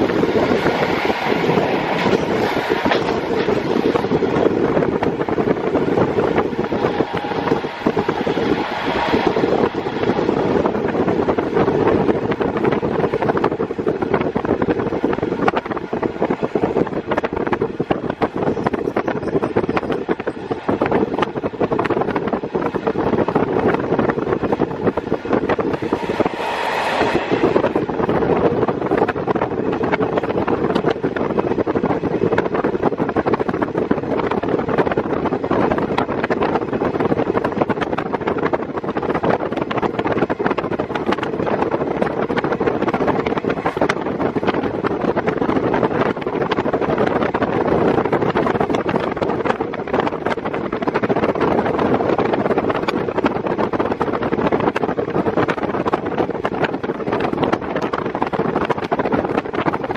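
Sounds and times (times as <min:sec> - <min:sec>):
diesel railcar running: 0:00.0 - 0:59.9
wind rushing through window: 0:00.0 - 0:59.9.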